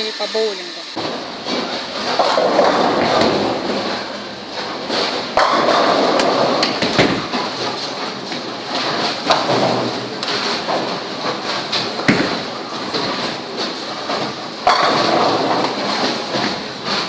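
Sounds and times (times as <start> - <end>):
bowling alley din: 0.9 - 17.0
sharp knocks and thuds: 5.4 - 17.0.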